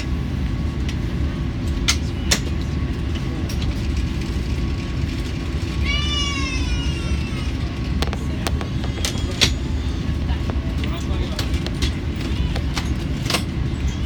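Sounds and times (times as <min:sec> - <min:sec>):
aircraft cabin rumble: 0:00.0 - 0:14.0
high wailing cry: 0:05.8 - 0:07.8.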